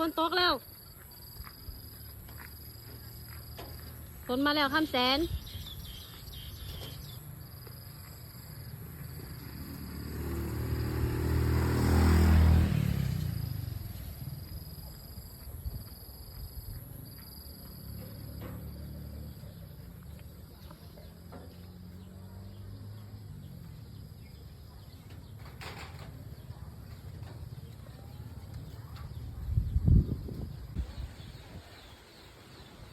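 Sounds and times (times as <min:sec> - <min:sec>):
motor vehicle engine passing by: 0:05.4 - 0:16.2, 0:16.8 - 0:32.9.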